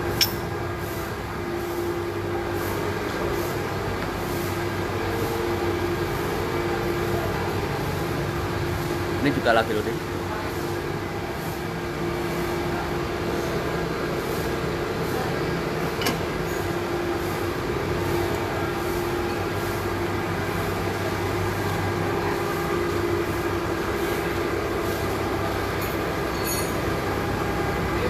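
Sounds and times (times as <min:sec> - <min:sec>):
milling machines humming: 0:00.0 - 0:28.0.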